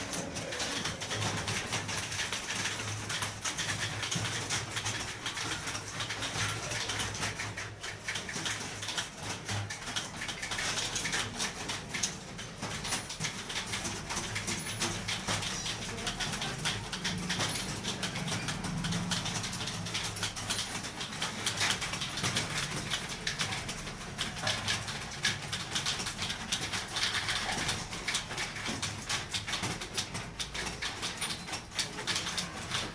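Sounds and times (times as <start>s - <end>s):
keyboard typing clicks: 0.0s - 32.9s.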